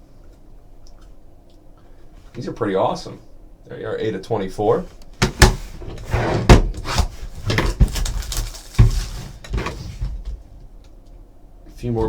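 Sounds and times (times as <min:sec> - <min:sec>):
packaging rustling: 0:06.8 - 0:09.5.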